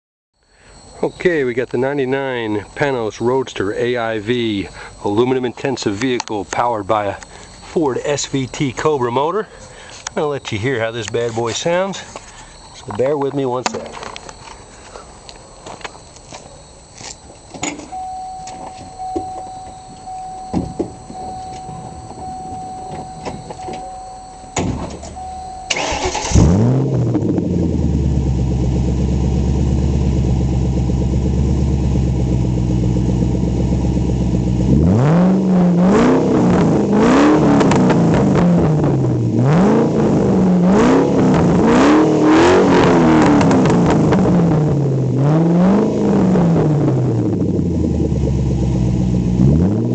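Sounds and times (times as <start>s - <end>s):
car engine idling and revving: 15.8s - 49.9s.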